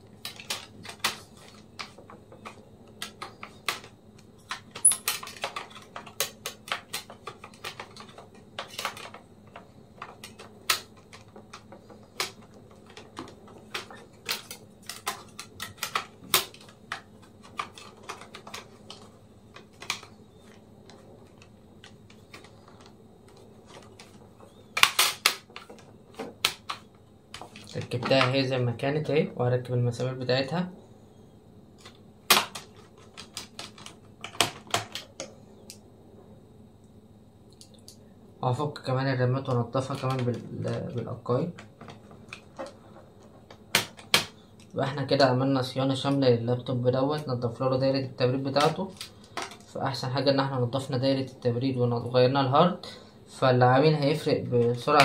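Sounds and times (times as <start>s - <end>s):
clicks of laptop parts handled: 0.2s - 28.4s, 31.8s - 35.8s, 41.5s - 44.8s, 48.6s - 49.7s.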